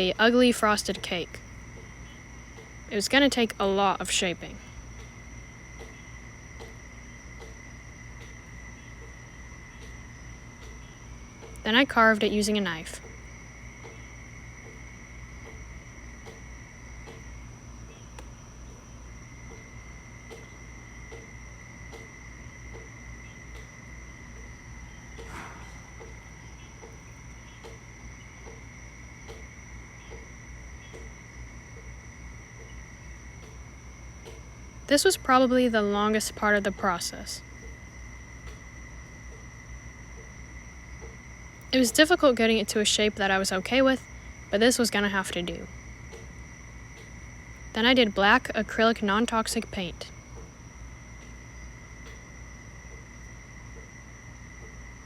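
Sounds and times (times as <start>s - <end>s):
low hum: 0.0s - 30.2s
faint regular clicks: 5.0s - 5.2s, 5.8s - 6.0s, 6.6s - 6.8s, 7.4s - 7.6s, 8.2s - 10.0s, 10.6s - 11.7s, 16.2s - 17.3s, 20.3s - 21.3s, 21.9s - 24.5s, 25.1s - 28.6s, 29.2s - 30.2s, 33.4s - 33.6s, 34.2s - 34.5s, 38.4s - 38.7s, 47.0s - 47.2s, 52.0s - 52.3s
soft ticks: 5.0s - 5.2s, 5.8s - 6.0s, 6.6s - 6.8s, 7.4s - 7.6s, 8.2s - 8.4s, 10.6s - 10.8s, 16.2s - 16.4s, 17.0s - 17.3s, 20.3s - 21.3s, 21.9s - 22.1s, 23.5s - 24.5s, 26.8s - 27.8s, 29.2s - 30.3s, 33.4s - 33.6s, 34.2s - 34.4s, 52.0s - 52.2s.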